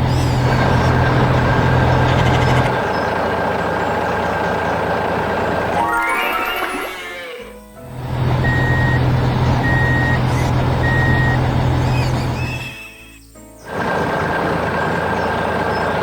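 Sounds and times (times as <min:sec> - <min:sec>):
heavy vehicle engine running: 0:07.9 - 0:11.9, 0:13.7 - 0:16.0
reversing alarm beeping: 0:08.4 - 0:10.2, 0:10.8 - 0:11.4.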